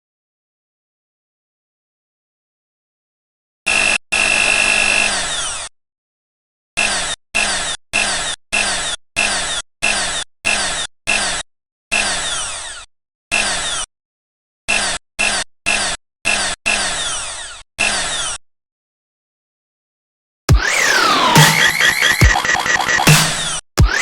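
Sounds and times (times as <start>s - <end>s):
chopped blender motor beat: 20.5s - 24.0s.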